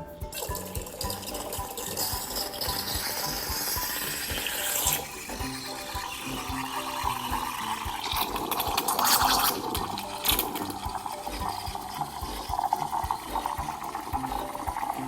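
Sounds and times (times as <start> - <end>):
soft background music: 0.0 - 15.0
liquid splashing and gurgling: 0.3 - 15.0.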